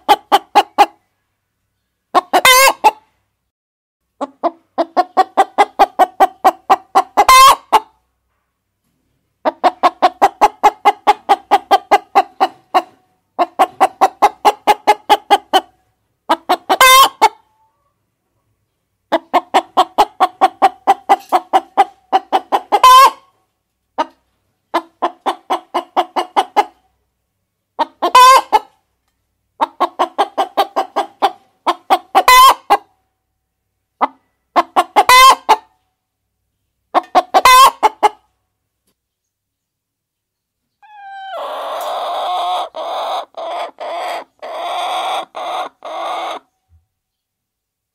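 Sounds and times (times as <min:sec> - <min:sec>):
hens clucking: 0:00.0 - 0:01.0, 0:02.1 - 0:03.1, 0:04.2 - 0:08.0, 0:09.4 - 0:17.9, 0:19.1 - 0:27.0, 0:27.8 - 0:28.9, 0:29.6 - 0:33.0, 0:34.0 - 0:35.8, 0:36.9 - 0:38.3, 0:40.8 - 0:46.5
hen squawking: 0:40.8 - 0:46.4.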